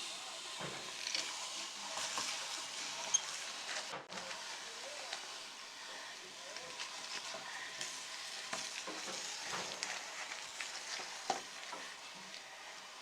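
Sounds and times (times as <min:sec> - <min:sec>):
crackers crunching in a grinder: 0:06.5 - 0:12.6.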